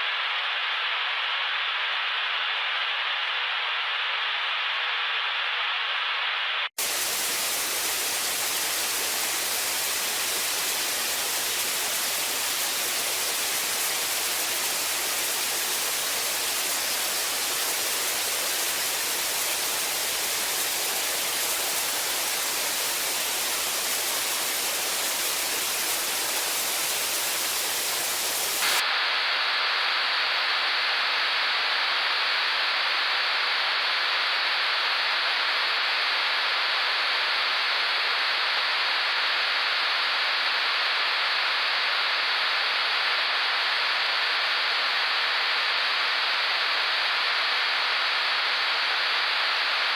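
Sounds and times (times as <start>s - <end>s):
white static hiss: 0.0s - 49.9s.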